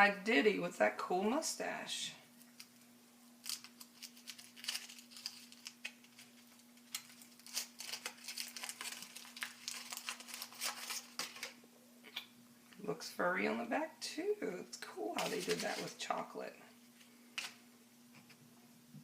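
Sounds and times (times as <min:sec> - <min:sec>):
wrapper crinkling and tearing: 0:02.4 - 0:11.6, 0:15.2 - 0:16.1.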